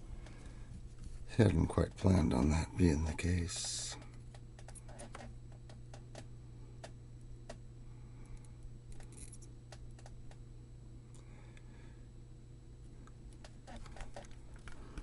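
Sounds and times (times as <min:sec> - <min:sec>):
steady low hum: 0:00.0 - 0:15.0
small tools clicking on circuit board: 0:03.6 - 0:07.6, 0:08.3 - 0:10.4.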